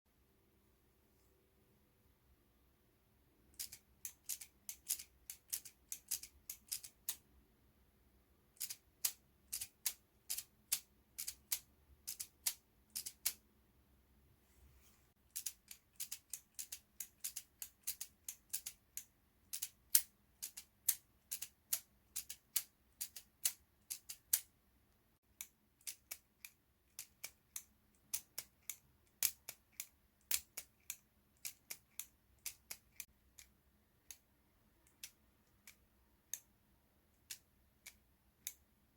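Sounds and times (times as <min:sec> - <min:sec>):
toy revolver mechanism clicking: 0:03.5 - 0:07.2, 0:08.5 - 0:13.4, 0:15.3 - 0:24.5, 0:25.4 - 0:36.5, 0:37.1 - 0:38.7.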